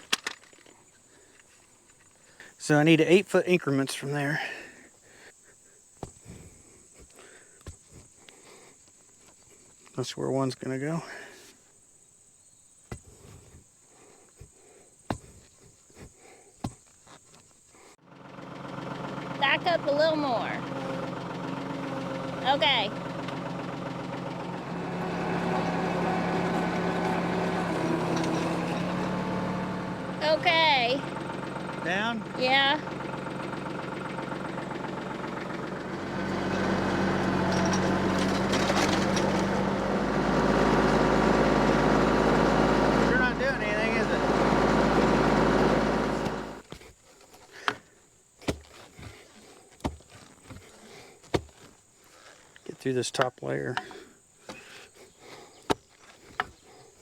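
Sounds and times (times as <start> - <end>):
tractor engine running: 18.0 - 46.7.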